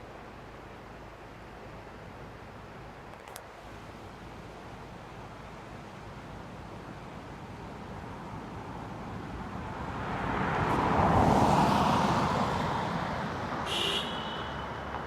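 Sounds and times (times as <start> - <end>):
vehicle passing by: 9.7 - 13.6.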